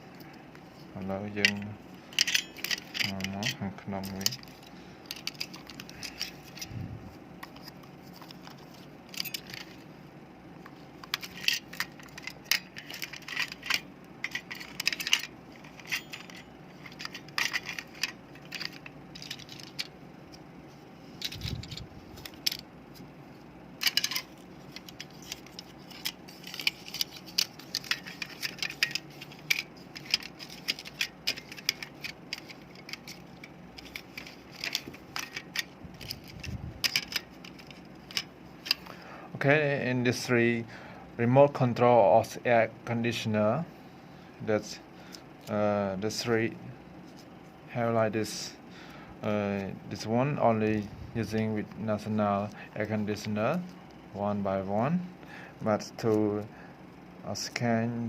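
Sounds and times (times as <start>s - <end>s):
plastic parts clicking and rattling: 1.3s - 6.7s, 7.4s - 9.8s, 11.0s - 20.0s, 21.0s - 22.6s, 23.8s - 38.9s.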